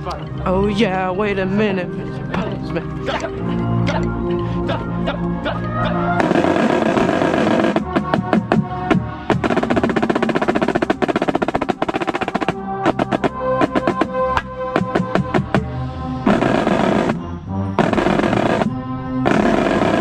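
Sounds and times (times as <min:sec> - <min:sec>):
snare drumline playing: 0:06.2 - 0:15.6, 0:16.3 - 0:17.2, 0:17.8 - 0:18.7, 0:19.3 - 0:20.0.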